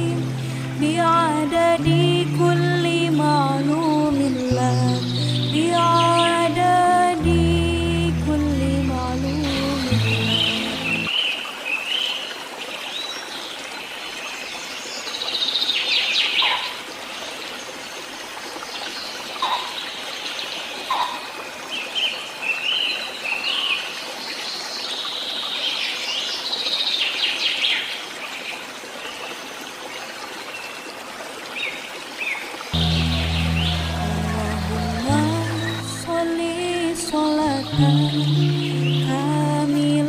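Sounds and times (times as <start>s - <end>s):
running water hiss: 0.0s - 40.0s
birds chirping and singing: 8.8s - 11.1s, 32.8s - 39.2s.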